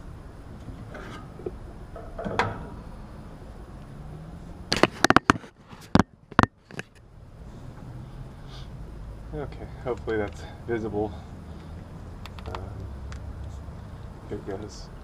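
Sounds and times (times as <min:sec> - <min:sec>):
low steady hum: 0:00.0 - 0:15.0
sharp clicks and knocks: 0:04.7 - 0:07.0.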